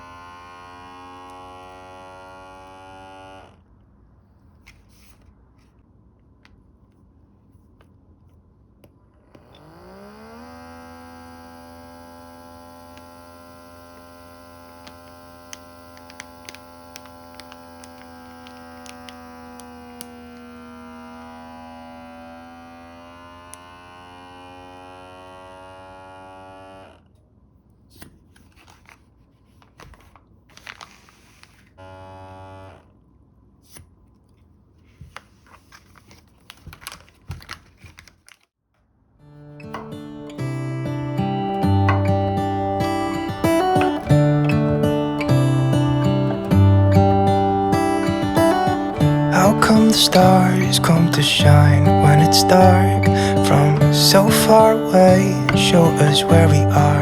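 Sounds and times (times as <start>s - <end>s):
vacuum sealer pump whining: 0.0s - 3.6s, 9.3s - 27.0s, 31.8s - 32.8s, 39.6s - 57.0s
plastic rustling: 28.4s - 31.8s, 34.8s - 38.5s.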